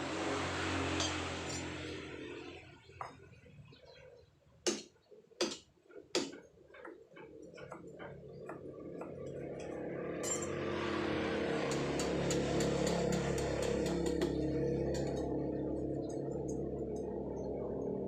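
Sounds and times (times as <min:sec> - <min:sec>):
hammer striking chisel into stone: 0:04.7 - 0:06.4.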